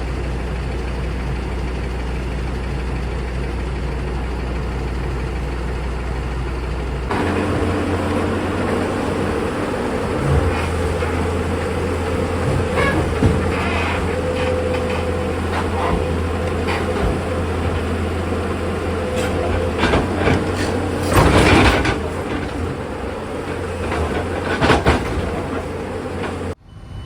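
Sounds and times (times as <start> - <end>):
excavator diesel engine running: 0.0 - 26.6
metallic knocks and clatter: 7.1 - 26.6.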